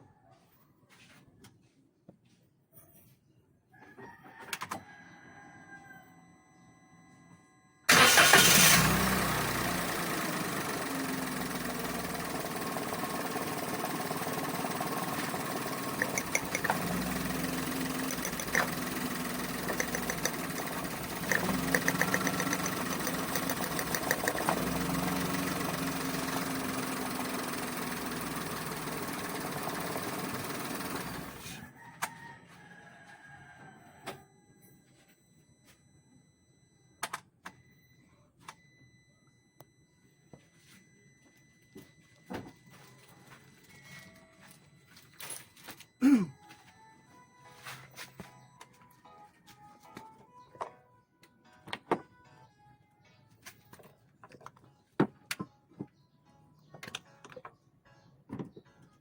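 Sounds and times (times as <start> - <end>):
car engine starting and idling: 7.9 - 31.6.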